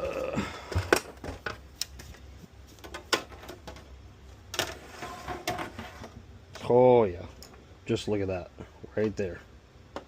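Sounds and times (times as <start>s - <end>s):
console parts clicking and knocking: 0.7s - 2.0s, 2.8s - 4.8s.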